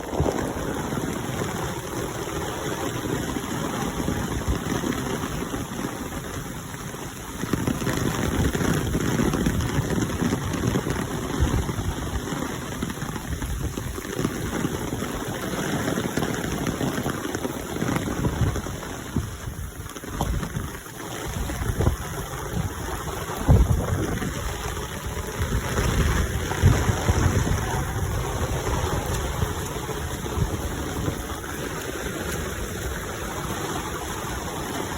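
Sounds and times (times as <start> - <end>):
low rumbling: 0.0 - 4.7, 21.3 - 34.9
rain falling: 0.0 - 34.9.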